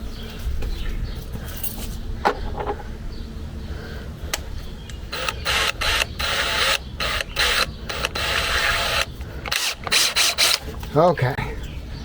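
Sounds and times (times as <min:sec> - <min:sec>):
power drill whirring bursts: 0:05.1 - 0:10.7.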